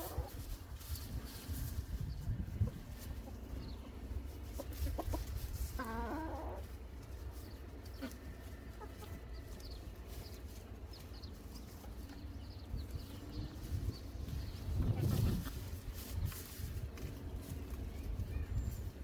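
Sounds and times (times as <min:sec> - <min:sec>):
chickens clucking: 0:00.0 - 0:19.0.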